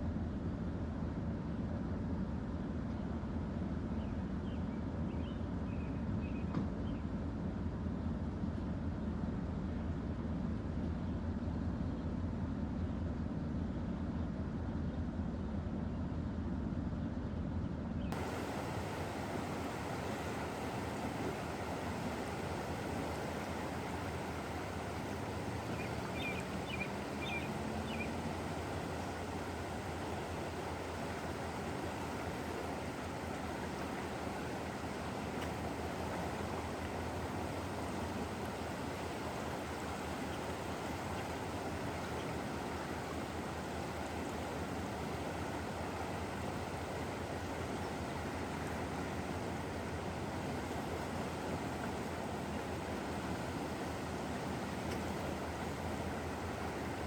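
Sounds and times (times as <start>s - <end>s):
river rushing: 18.2s - 57.0s
small bird chirping: 25.7s - 28.2s.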